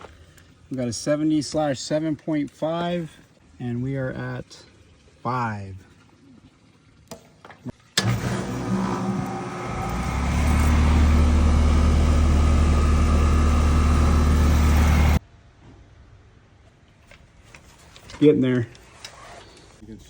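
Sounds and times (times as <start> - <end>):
compressor and fan hum: 8.0 - 15.2.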